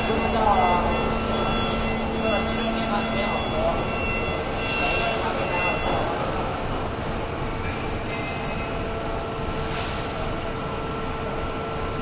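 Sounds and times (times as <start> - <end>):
machine droning: 0.0 - 9.2.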